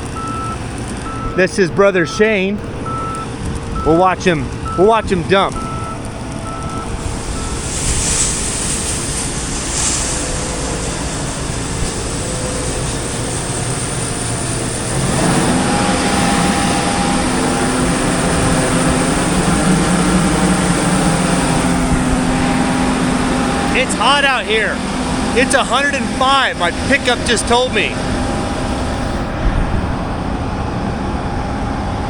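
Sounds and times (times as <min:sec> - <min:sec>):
engine hum: 0:00.0 - 0:32.0
machinery drone: 0:00.0 - 0:32.0
reversing beeps: 0:00.1 - 0:01.4, 0:02.0 - 0:04.0, 0:04.6 - 0:08.4.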